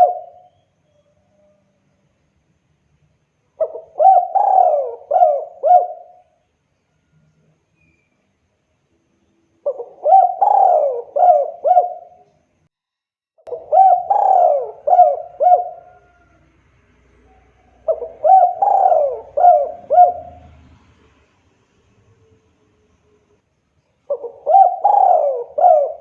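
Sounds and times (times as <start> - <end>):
dove cooing: 0.0 - 0.6, 3.6 - 6.3, 9.6 - 12.3, 13.5 - 16.5, 17.1 - 20.6, 24.1 - 26.0.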